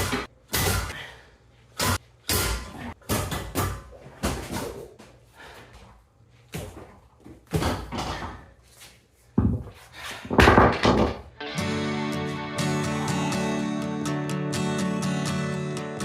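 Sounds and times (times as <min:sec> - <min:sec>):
tools knocking and clunking: 0:10.3 - 0:11.3.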